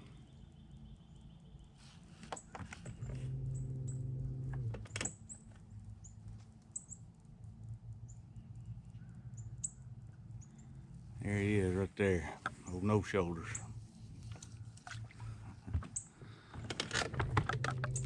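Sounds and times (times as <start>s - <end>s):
electric trolling motor humming: 3.0s - 4.8s
clicks and knocks on boat: 14.8s - 18.0s.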